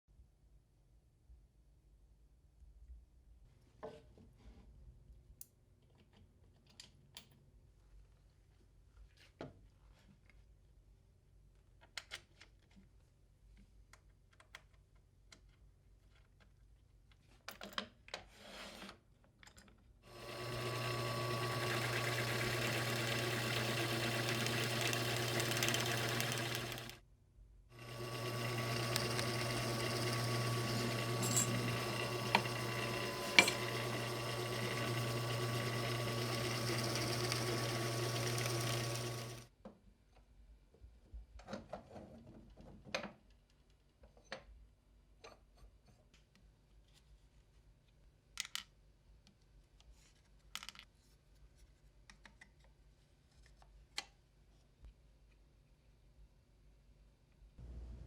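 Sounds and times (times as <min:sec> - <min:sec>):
drill press motor humming: 0:20.1 - 0:27.0, 0:27.8 - 0:39.5.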